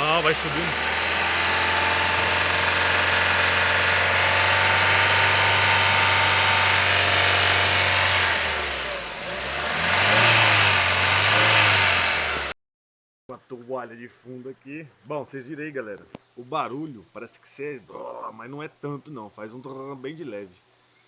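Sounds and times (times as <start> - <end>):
car engine revving: 0.0 - 12.6.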